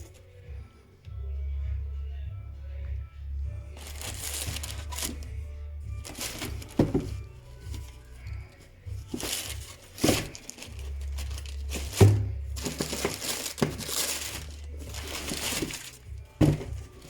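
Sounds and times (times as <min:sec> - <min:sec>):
packaging crinkling and rustling: 0:03.8 - 0:05.3, 0:06.0 - 0:08.3, 0:09.0 - 0:17.0.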